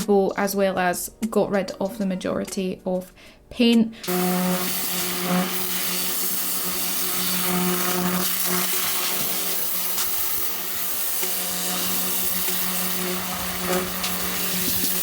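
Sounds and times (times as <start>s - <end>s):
pressure washer pump humming: 4.1s - 15.0s
water jet spraying hull: 4.1s - 15.0s.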